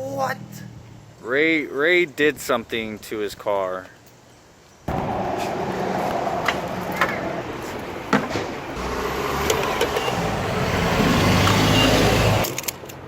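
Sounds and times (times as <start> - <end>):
car engine and road noise: 0.0 - 1.2, 4.9 - 13.0.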